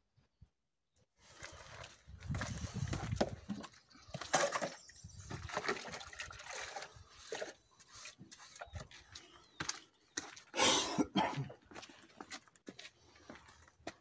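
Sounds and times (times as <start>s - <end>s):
wet mortar scraping and squelching: 1.2s - 10.6s.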